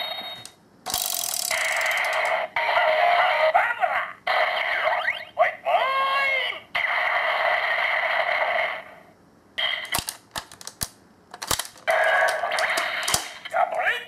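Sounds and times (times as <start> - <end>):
toy electronic sound: 0.0 - 3.2
toy electronic buzzing effect: 0.9 - 2.5
sharp plastic clicks: 9.8 - 13.4.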